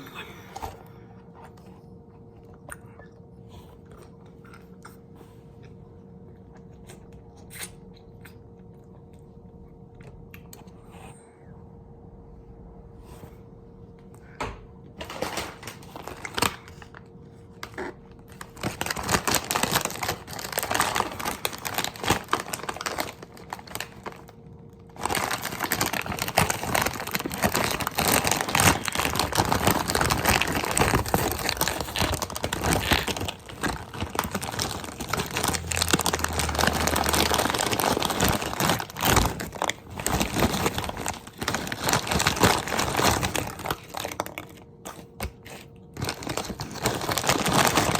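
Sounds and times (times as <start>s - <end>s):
food wrapper crinkling: 15.0s - 47.9s.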